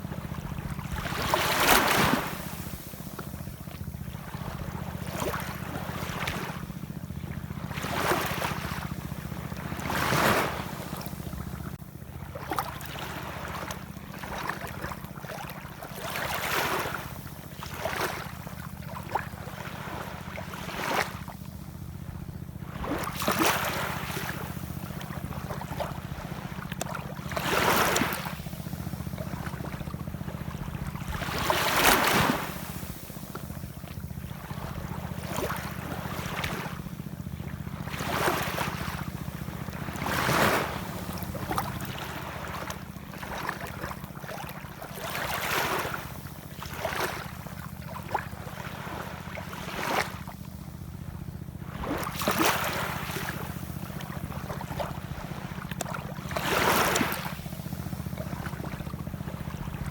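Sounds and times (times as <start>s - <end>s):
steady low rumble: 21.3s - 43.4s
ocean waves washing in: 22.7s - 37.1s.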